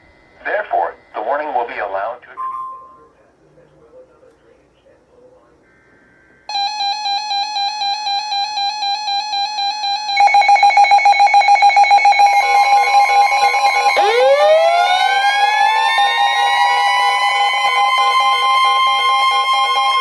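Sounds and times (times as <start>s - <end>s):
rapidly pulsing alarm tone: 6.5s - 20.0s
rising siren wail: 6.9s - 20.0s.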